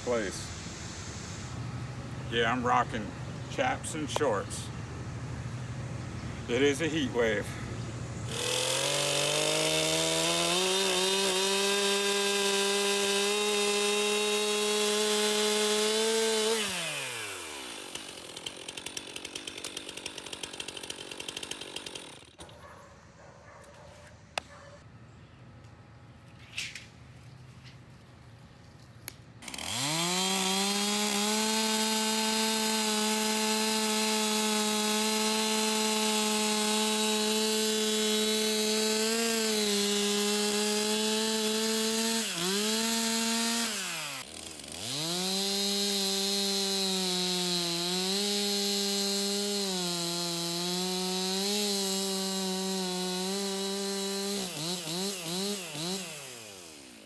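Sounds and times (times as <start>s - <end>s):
chainsaw cutting wood: 1.8s - 22.5s, 29.4s - 57.0s.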